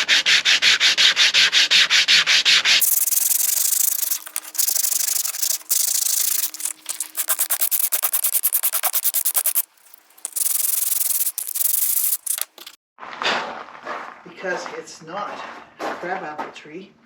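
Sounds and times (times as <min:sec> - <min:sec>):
sanding wood by hand: 0:00.0 - 0:12.8.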